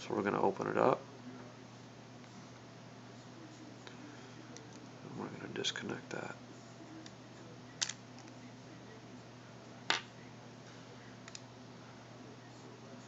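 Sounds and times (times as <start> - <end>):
faint steady hum: 0.0 - 13.0.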